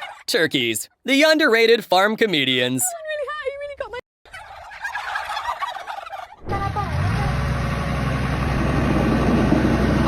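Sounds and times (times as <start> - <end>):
turkeys gobbling: 0.0 - 0.4, 4.3 - 7.3.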